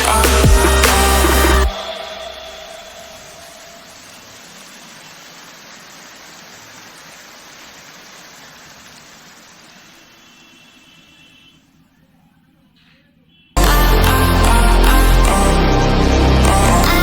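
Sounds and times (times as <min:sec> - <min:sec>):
rushing hiss of noise: 0:00.0 - 0:11.4.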